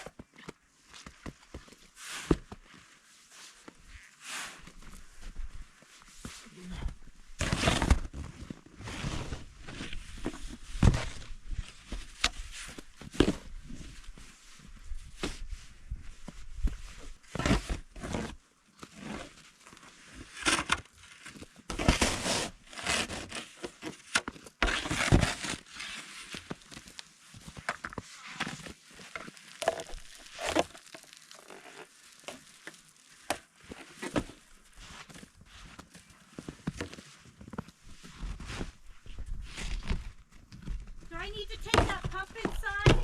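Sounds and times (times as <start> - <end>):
footsteps crunching snow: 29.0 - 33.1.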